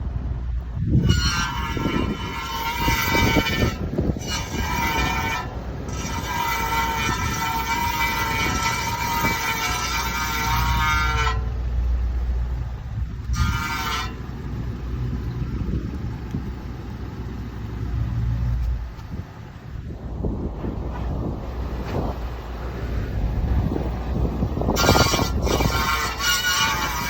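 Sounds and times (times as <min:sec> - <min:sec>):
low rumble of rolling car: 0:00.0 - 0:27.0
high ringing brake screech: 0:01.0 - 0:11.6, 0:13.3 - 0:14.3, 0:24.8 - 0:27.0.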